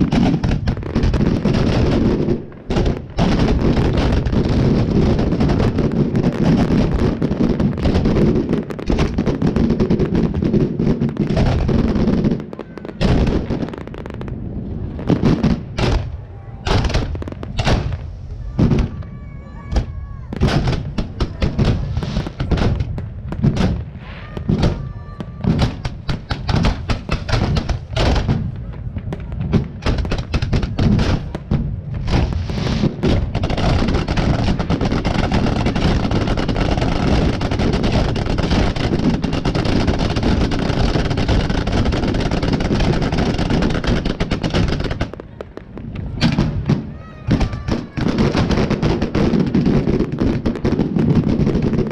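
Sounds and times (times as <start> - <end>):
fireworks bursts and bangs: 0.0 - 51.9
fireworks crackling: 0.0 - 51.9
firework whistles: 32.1 - 33.0.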